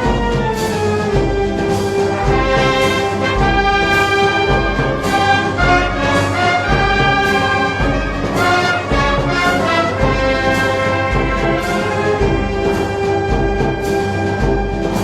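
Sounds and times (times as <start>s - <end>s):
brass band playing: 0.0s - 15.0s.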